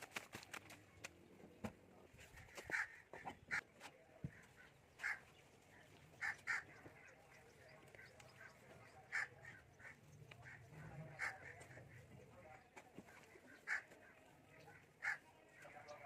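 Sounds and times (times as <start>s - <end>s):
chickens clucking: 6.0s - 16.0s.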